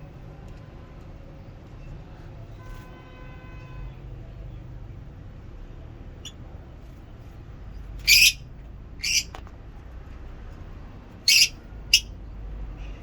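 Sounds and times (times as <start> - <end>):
lovebirds calling: 8.0 - 8.4, 9.0 - 9.4, 11.3 - 12.1.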